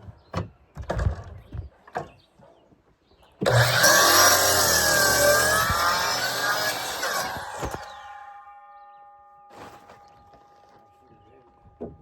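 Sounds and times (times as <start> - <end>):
electric saw cutting wood: 3.4 - 8.4.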